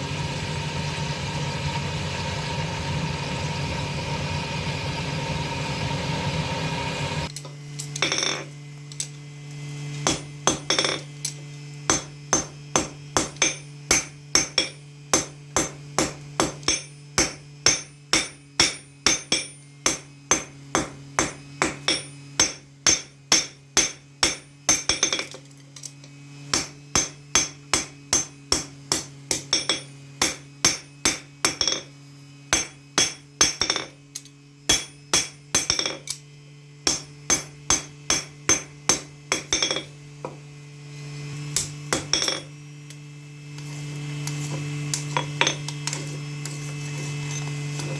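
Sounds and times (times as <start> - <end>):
hammer ringing on steel: 11.9 - 25.3, 32.5 - 33.9, 34.7 - 36.2, 36.9 - 39.9.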